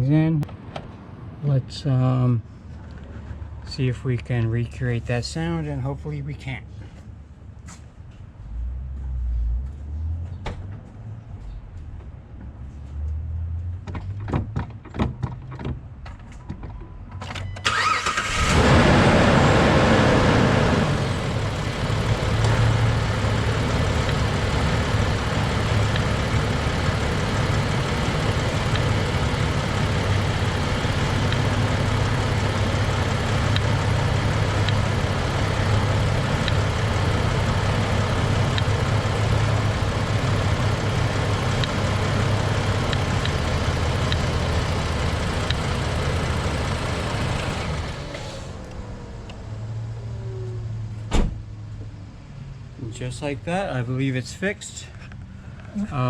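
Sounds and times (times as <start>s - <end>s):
car engine starting and idling: 17.6s - 50.0s.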